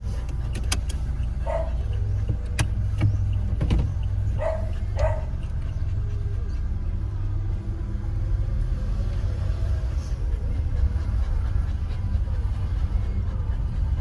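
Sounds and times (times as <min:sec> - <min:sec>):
steady low rumble: 0:00.0 - 0:14.0
dog barking: 0:01.3 - 0:03.2, 0:04.2 - 0:05.8.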